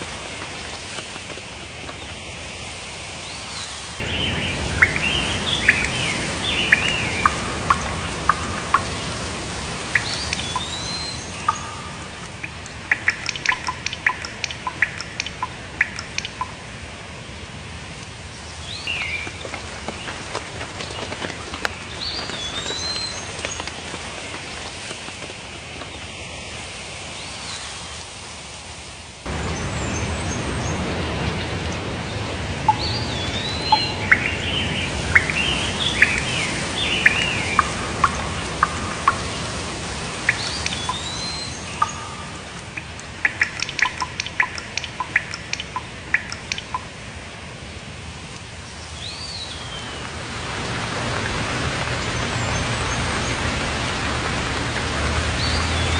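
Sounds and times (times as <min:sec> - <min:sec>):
steady hissing background: 0:00.0 - 0:55.9
birds singing and calling: 0:03.2 - 0:16.6, 0:18.5 - 0:20.1, 0:20.8 - 0:23.9, 0:32.7 - 0:46.8.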